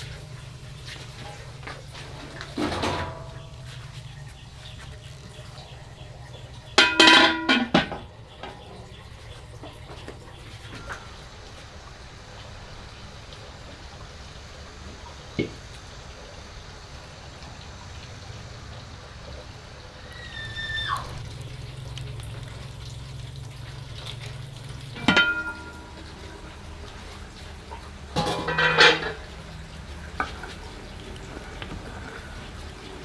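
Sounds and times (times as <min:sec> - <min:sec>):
metal pots clattering: 0:00.0 - 0:05.5, 0:06.4 - 0:11.1, 0:24.8 - 0:33.0
low steady hum: 0:00.0 - 0:33.0.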